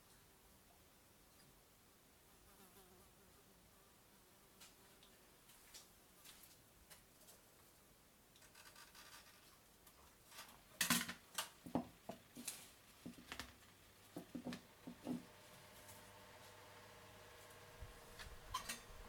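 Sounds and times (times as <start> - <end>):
faint steady hum: 9.2 - 19.0.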